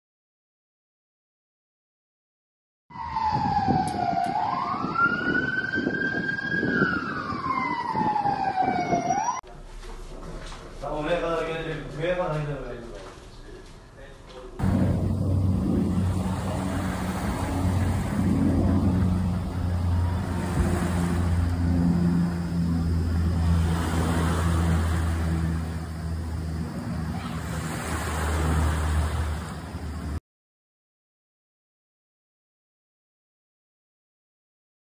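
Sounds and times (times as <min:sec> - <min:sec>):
emergency siren wailing: 0:02.9 - 0:09.4, 0:14.6 - 0:27.6
low rumbling noise: 0:03.0 - 0:30.2
low engine drone: 0:14.4 - 0:30.2
rushing noise: 0:14.6 - 0:30.2.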